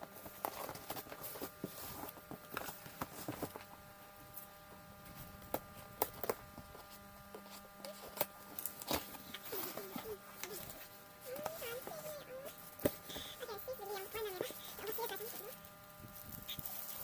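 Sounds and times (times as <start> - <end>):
steady background hum: 0.0 - 17.0
packaging rustling: 7.9 - 15.6.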